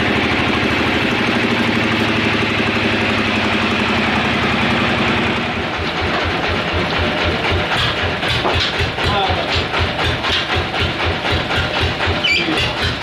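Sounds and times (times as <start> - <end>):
sawmill engine running: 0.0 - 13.0.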